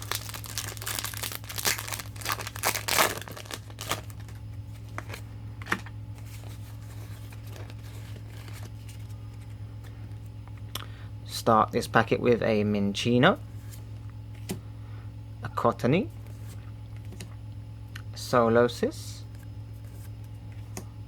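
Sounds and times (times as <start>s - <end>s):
foil wrapper tearing and crinkling: 0.0s - 5.2s.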